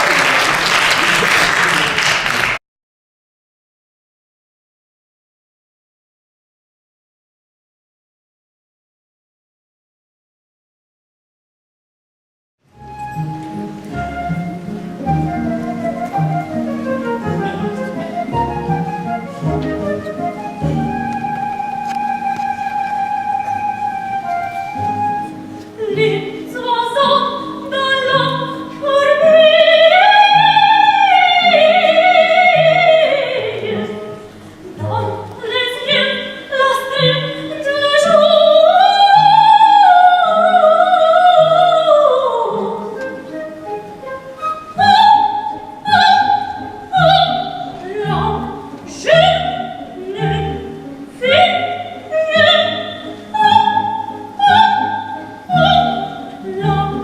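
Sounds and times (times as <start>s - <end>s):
instrumental accompaniment: 12.7s - 57.0s
high voice singing operetta: 25.8s - 43.6s, 44.7s - 57.0s.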